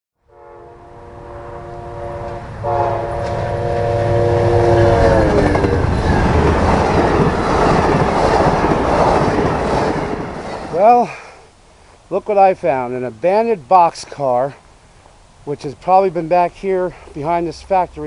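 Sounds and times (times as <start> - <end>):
train air horn: 0.2 - 5.6
train rolling on rails: 1.0 - 11.5.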